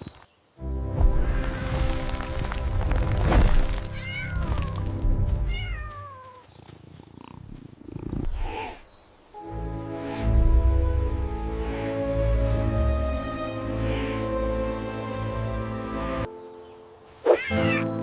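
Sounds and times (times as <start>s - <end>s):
background music: 0.6s - 5.7s, 9.4s - 18.0s
cat meowing: 4.0s - 4.8s, 5.5s - 6.4s, 17.3s - 17.8s.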